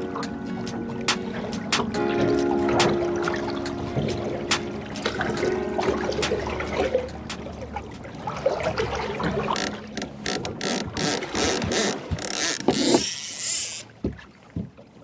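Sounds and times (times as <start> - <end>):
fishing reel ratchet clicking: 9.6 - 13.8
fishing reel whirring: 9.6 - 13.9.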